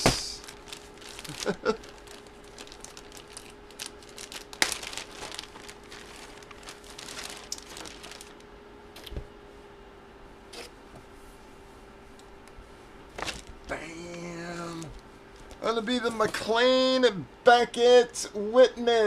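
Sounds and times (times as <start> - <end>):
plastic packaging crinkling: 0.0 - 9.2, 13.1 - 13.7, 14.6 - 15.7
sharp crackle: 0.2 - 8.5.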